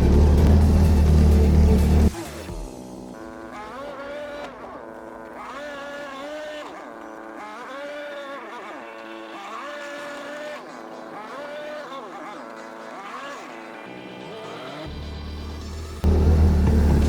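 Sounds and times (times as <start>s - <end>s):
engine revving: 0.0s - 17.0s.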